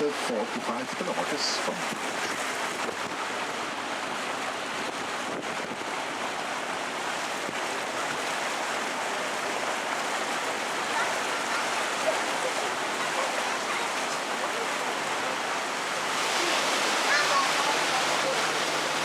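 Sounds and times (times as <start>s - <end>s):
water washing along a hull: 0.0s - 19.0s
wind: 0.0s - 19.0s.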